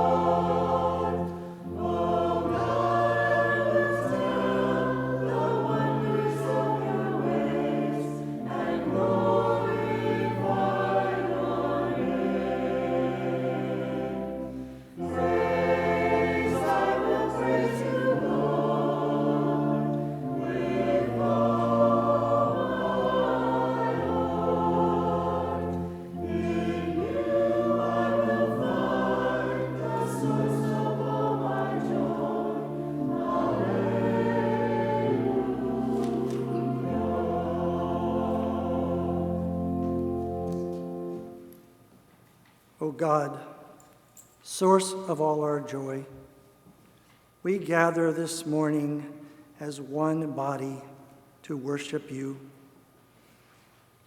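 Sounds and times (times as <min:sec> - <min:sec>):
group singing a slow hymn: 0:00.0 - 0:41.7.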